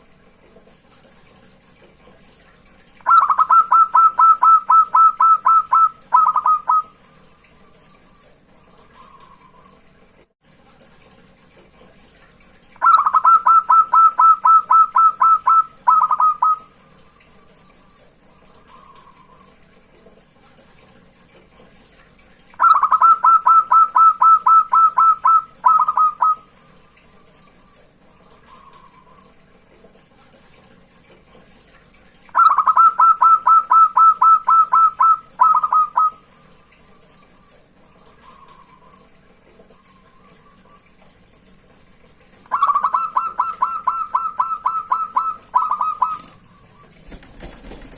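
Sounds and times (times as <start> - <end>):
dove rapid staccato cooing: 3.0 - 6.9, 12.8 - 16.7, 22.6 - 26.4, 32.3 - 36.2, 42.5 - 47.9.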